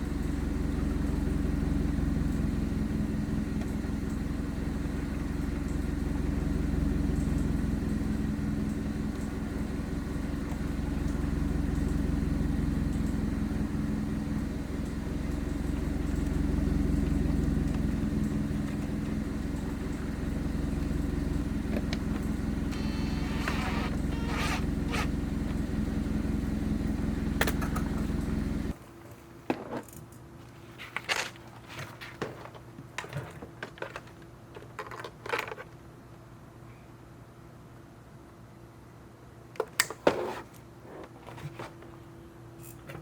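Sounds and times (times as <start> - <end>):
low engine-like hum: 0.0 - 28.9.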